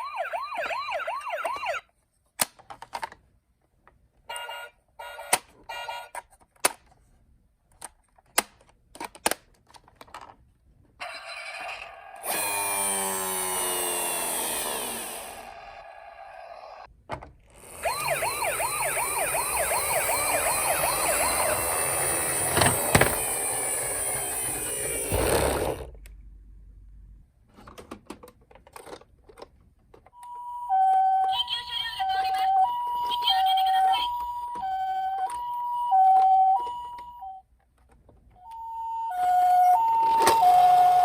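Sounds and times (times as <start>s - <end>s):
toy electronic siren: 0.0s - 1.8s, 4.3s - 6.2s, 11.0s - 16.9s, 17.7s - 25.1s, 30.2s - 37.4s, 38.4s - 41.0s.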